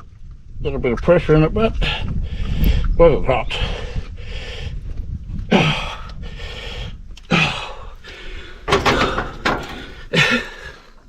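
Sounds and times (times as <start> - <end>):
metal parts clunking: 8.1 - 11.0.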